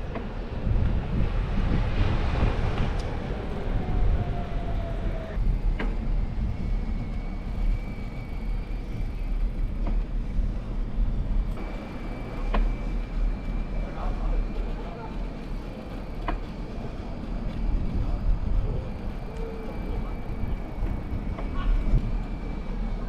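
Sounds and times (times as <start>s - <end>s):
wind on microphone: 0.0s - 13.6s, 16.8s - 23.0s
bicycle tyres rumbling: 0.0s - 23.0s.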